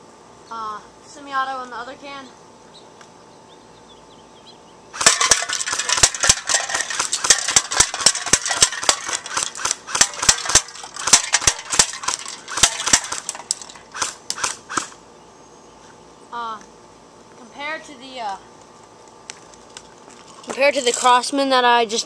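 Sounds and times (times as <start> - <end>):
airsoft rifle shots: 5.0 - 15.0.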